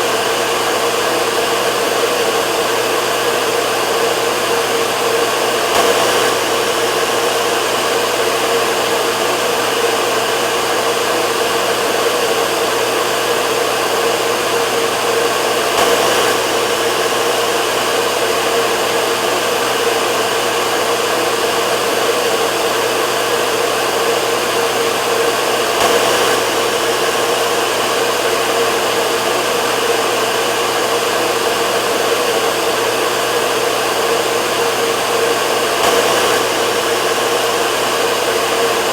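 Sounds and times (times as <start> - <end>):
hair dryer blowing: 0.0 - 38.9.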